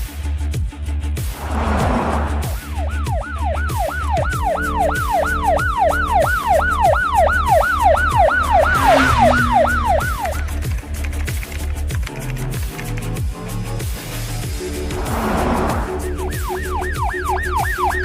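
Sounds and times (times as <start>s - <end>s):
ambulance siren yelping: 1.6s - 10.5s, 15.9s - 18.0s.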